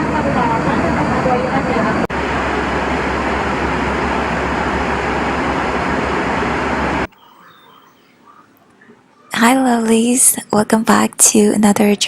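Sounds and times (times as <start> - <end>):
vehicle noise with low hum: 0.0 - 7.2.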